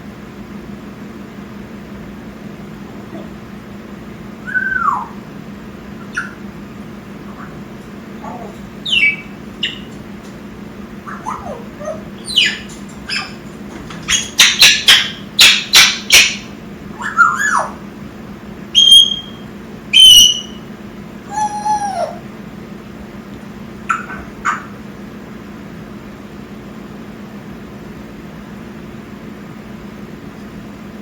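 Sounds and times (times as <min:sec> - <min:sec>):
parrot whistles and squawks: 0:04.4 - 0:05.2, 0:06.0 - 0:06.4, 0:07.3 - 0:07.6, 0:08.2 - 0:09.9, 0:11.0 - 0:13.4, 0:14.1 - 0:17.8, 0:18.8 - 0:20.6, 0:21.3 - 0:22.2, 0:23.9 - 0:24.8.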